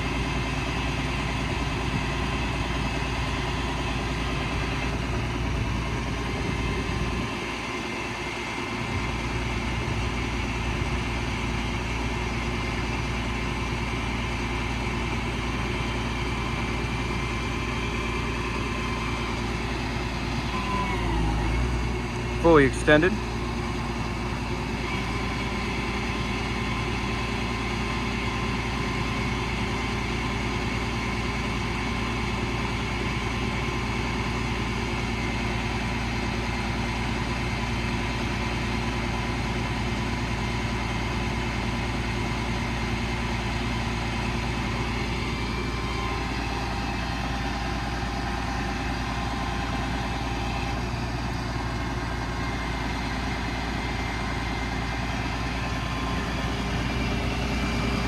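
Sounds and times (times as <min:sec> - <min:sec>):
faint engine whine: 0:00.0 - 0:29.6, 0:43.4 - 0:58.0
diesel engine idling: 0:00.0 - 0:58.0.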